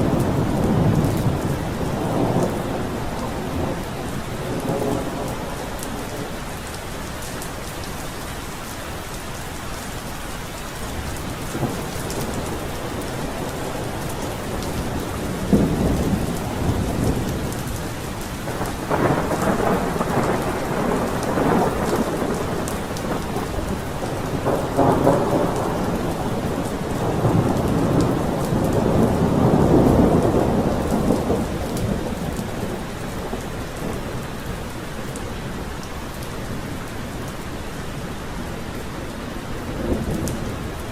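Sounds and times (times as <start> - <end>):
rolling thunder: 0.0 - 6.4, 11.4 - 35.0
heavy rain falling: 0.0 - 40.9.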